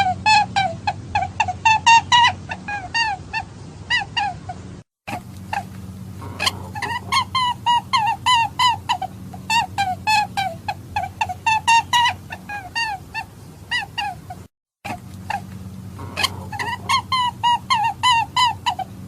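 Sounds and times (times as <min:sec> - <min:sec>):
faint low hum: 0:00.0 - 0:19.0
hare squeaky calls: 0:05.1 - 0:19.0.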